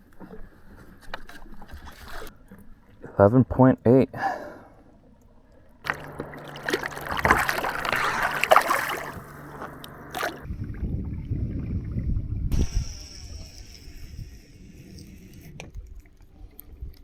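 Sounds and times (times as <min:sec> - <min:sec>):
steady low hum: 0:05.6 - 0:16.0
water splashing against kayak hull: 0:05.8 - 0:10.5
faint high whine: 0:05.9 - 0:10.5
deep rumble: 0:05.9 - 0:14.5.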